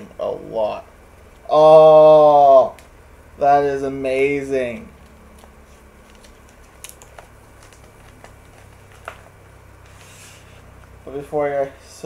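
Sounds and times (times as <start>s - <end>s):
steady low hum: 0.0s - 12.0s
soft rustle: 4.7s - 11.0s.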